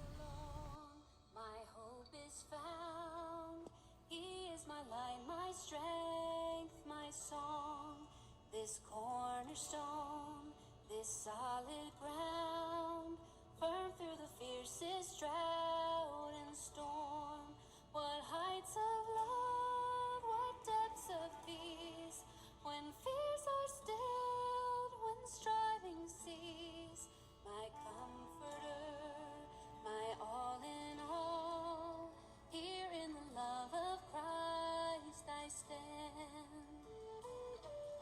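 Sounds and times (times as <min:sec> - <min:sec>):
woman singing a slow song: 0:00.0 - 0:38.0.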